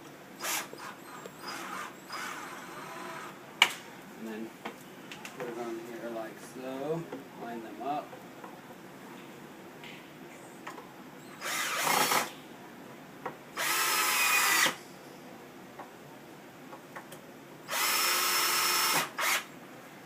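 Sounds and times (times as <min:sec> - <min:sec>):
power screwdriver driving screws: 0:11.4 - 0:12.3, 0:13.6 - 0:14.8, 0:17.7 - 0:19.5.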